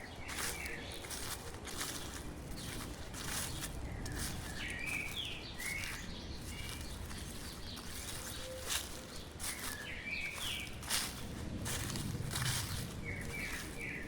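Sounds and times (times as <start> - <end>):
footsteps in dry leaves: 0.0 - 14.0
songbird chirping: 0.0 - 14.0
low outdoor rumble: 10.6 - 14.0.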